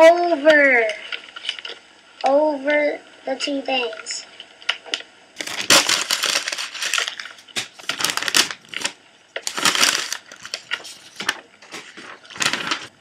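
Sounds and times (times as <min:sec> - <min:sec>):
paper crinkling: 0:05.4 - 0:13.0.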